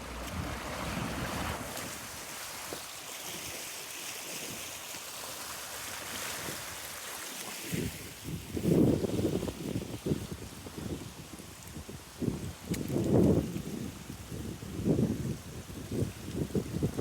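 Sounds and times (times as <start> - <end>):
wind buffeting microphone: 0.0 - 2.4, 7.7 - 17.0
flowing river water: 0.0 - 17.0.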